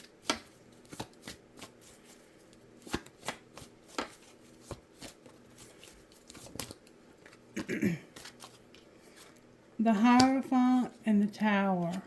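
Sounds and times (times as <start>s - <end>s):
cards being shuffled: 0.2s - 9.4s.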